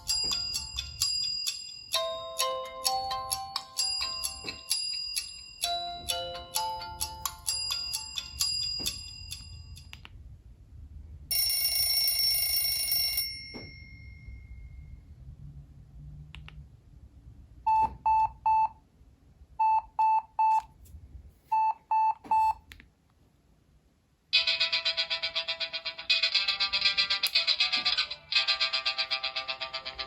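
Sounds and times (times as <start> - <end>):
buzzy phone ring: 0.0 - 9.9, 11.3 - 14.7, 24.4 - 30.0
ringtone melody: 0.0 - 9.9, 24.4 - 30.0.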